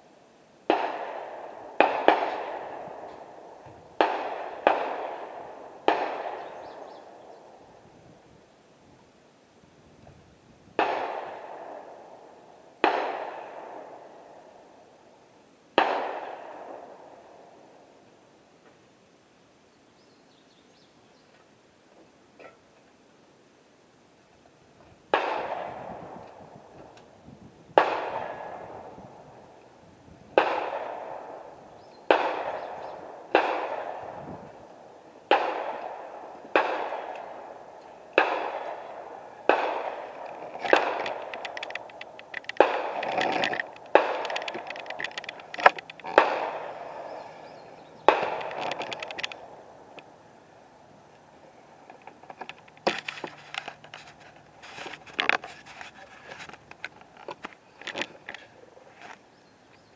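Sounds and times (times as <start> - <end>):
rifle shots with echo: 0.6 - 7.6, 10.8 - 14.6, 15.7 - 17.8, 25.1 - 26.6, 27.8 - 29.6, 30.3 - 50.2.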